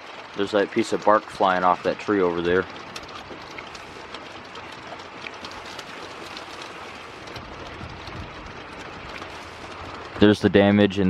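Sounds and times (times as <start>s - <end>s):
light rain falling: 0.0s - 10.7s
raindrops ticking: 0.0s - 11.0s.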